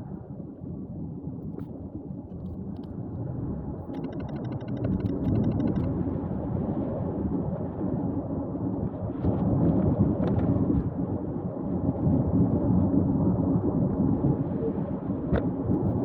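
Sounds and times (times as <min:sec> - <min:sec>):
strong wind buffeting microphone: 0:04.8 - 0:16.0.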